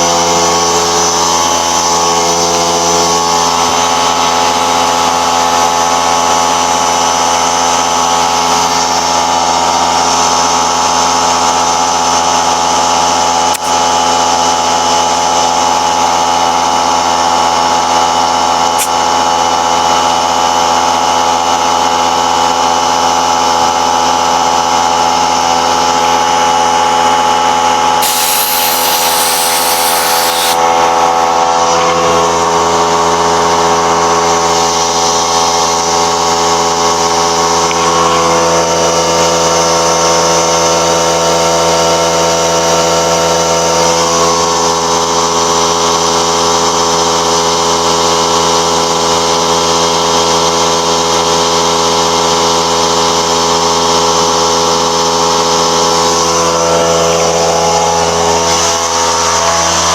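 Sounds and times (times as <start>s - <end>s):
power tool motor running: 23.6s - 39.8s
high hiss: 28.0s - 30.6s.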